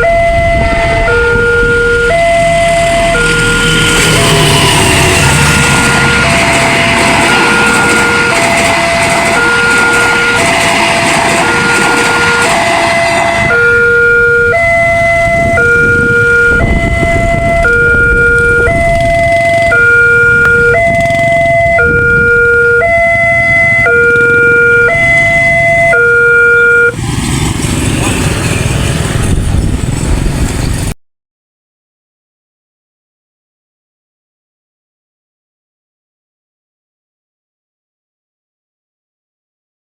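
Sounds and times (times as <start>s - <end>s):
heavy rushing noise: 0.0s - 26.0s, 26.9s - 31.0s
level crossing two-tone siren: 0.0s - 27.0s.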